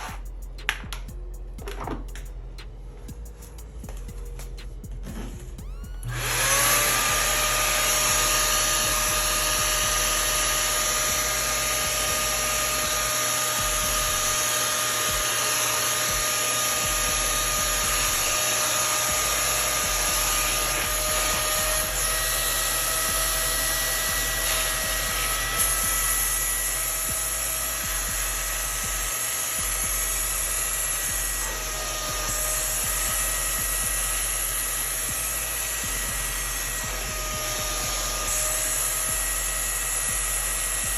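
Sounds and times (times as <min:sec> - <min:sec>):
vacuum motor whine: 0:05.2 - 0:40.9.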